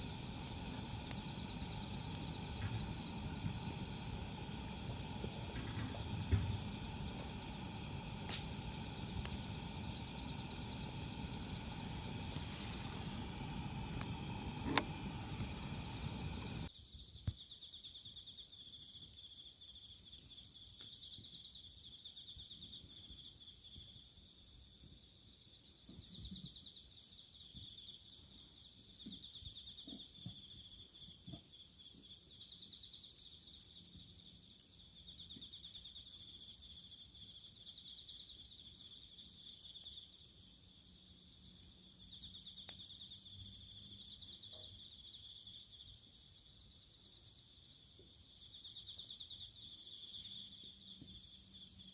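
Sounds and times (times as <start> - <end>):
faint clicks: 0.0 - 16.7
insects trilling: 0.0 - 51.9.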